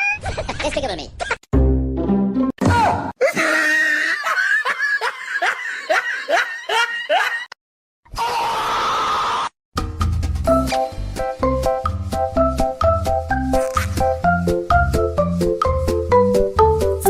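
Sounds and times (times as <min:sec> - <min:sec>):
person laughing: 0:03.2 - 0:07.6.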